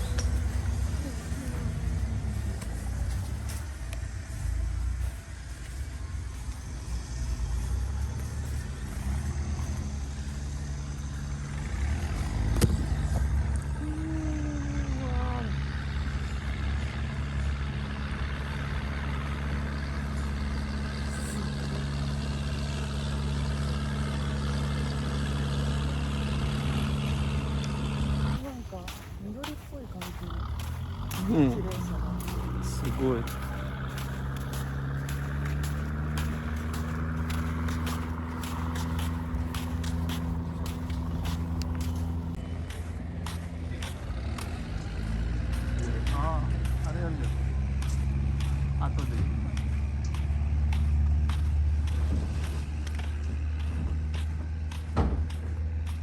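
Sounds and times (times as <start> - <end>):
large engine droning: 0.0 - 56.0.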